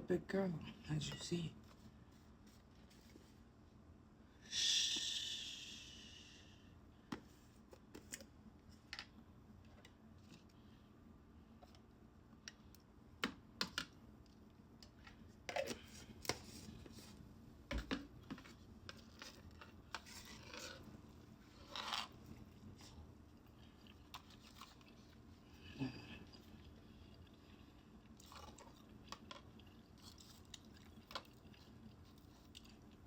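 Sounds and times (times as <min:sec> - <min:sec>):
crunchy chewing of fried food: 0:19.0 - 0:33.0.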